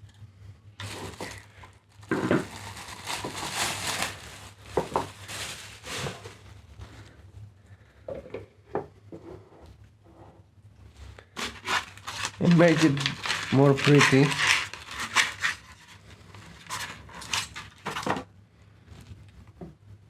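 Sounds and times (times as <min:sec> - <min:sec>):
packaging rustling and crackling: 0:00.8 - 0:07.1, 0:11.4 - 0:18.3.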